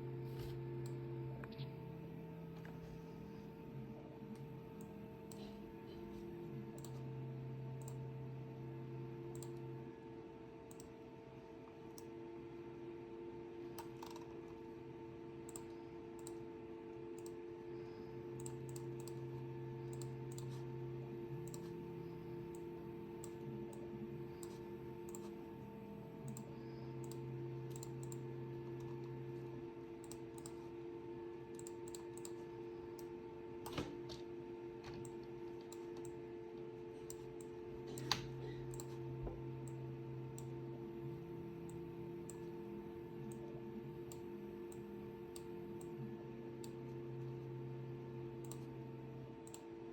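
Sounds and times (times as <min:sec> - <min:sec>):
machine hum: 0:00.0 - 0:49.9.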